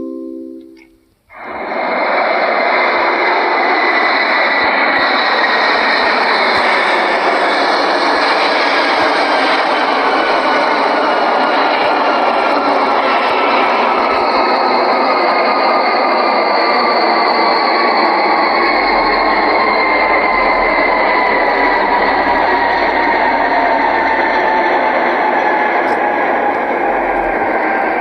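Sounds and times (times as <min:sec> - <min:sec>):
chime melody: 0:00.0 - 0:01.0
faint steady tones: 0:00.0 - 0:01.7, 0:02.9 - 0:28.0
airliner cabin engine noise: 0:01.3 - 0:28.0
loud rushing noise: 0:01.3 - 0:28.0.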